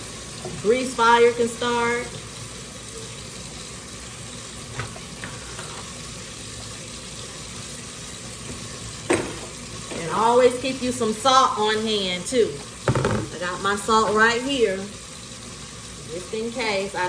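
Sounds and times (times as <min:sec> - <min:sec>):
oil sizzling in deep fryer: 0:00.0 - 0:17.0.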